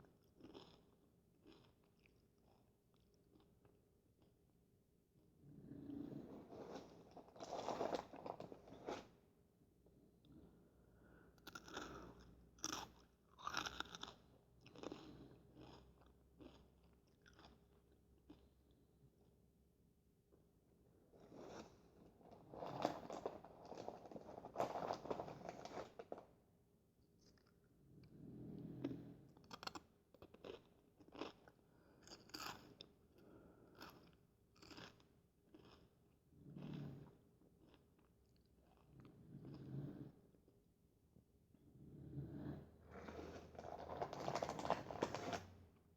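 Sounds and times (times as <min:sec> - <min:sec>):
chewing crisp corn chips: 0:00.2 - 0:04.3, 0:11.4 - 0:18.6, 0:29.4 - 0:32.9, 0:33.7 - 0:36.0, 0:36.6 - 0:39.0.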